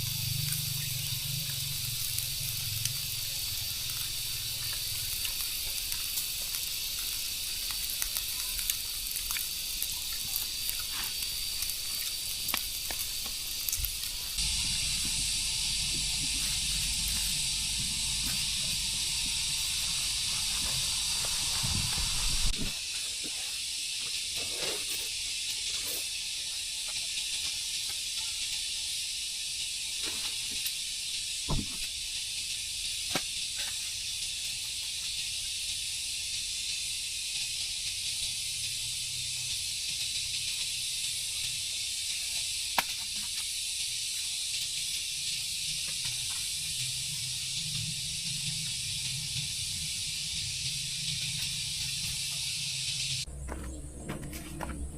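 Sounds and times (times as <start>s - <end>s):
high-pitched hiss: 0.0s - 54.9s
low rumble: 13.8s - 22.7s, 46.8s - 54.9s.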